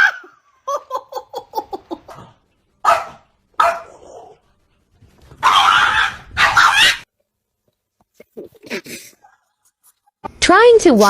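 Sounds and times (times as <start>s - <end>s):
dog barking: 2.8s - 4.3s, 5.4s - 7.0s.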